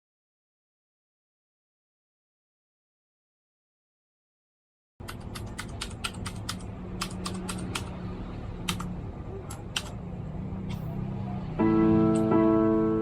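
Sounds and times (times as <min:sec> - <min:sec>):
mechanical keyboard keystrokes: 0:05.0 - 0:07.9, 0:08.6 - 0:08.9, 0:09.5 - 0:10.0
piano music: 0:11.4 - 0:13.0.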